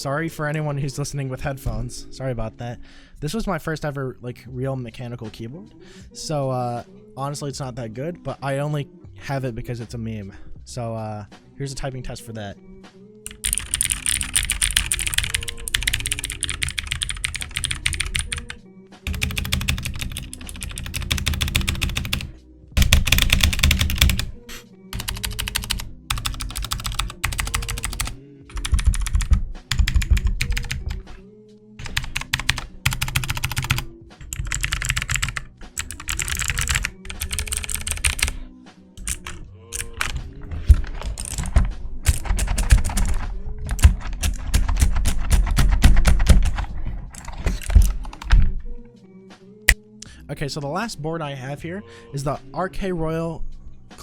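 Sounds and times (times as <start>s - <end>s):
background music: 0.0s - 54.0s
fast mechanical keyboard typing: 13.3s - 31.0s, 31.8s - 38.4s, 39.0s - 48.4s.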